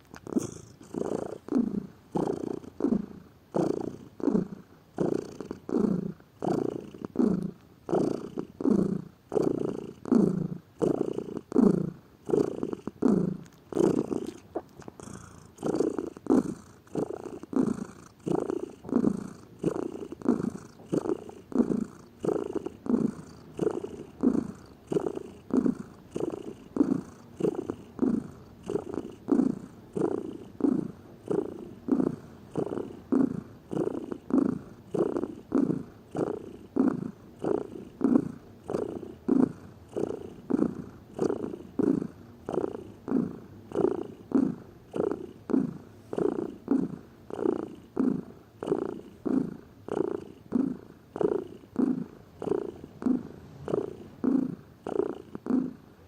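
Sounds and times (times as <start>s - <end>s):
cat purring: 0.0s - 56.0s.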